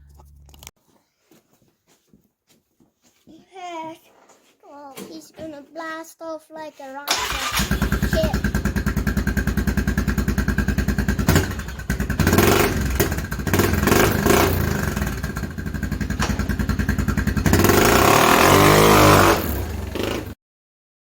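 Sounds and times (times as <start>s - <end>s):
atv engine idling and revving: 7.1s - 20.4s.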